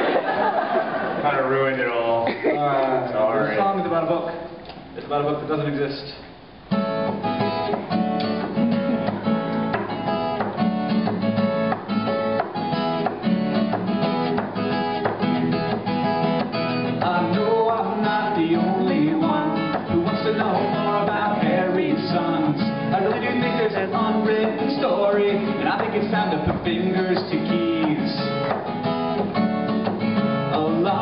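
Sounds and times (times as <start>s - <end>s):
acoustic guitar strumming: 6.6s - 31.0s.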